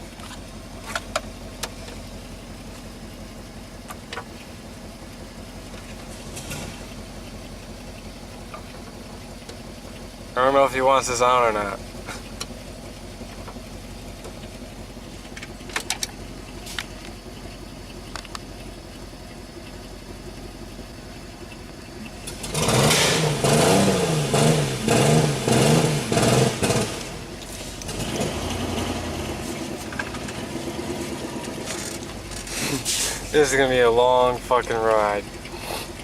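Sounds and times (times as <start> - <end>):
car engine running and revving: 0.0 - 36.0
light engine clicks: 15.3 - 19.0.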